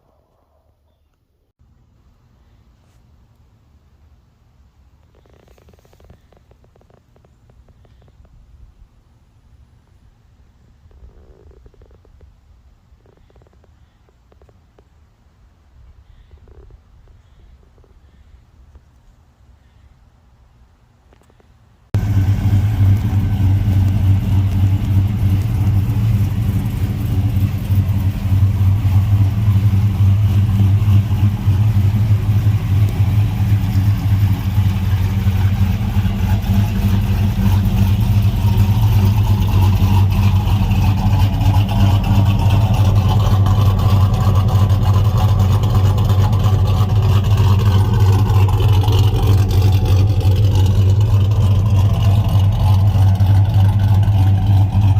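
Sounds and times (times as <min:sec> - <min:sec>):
truck engine running: 0:22.0 - 0:54.9.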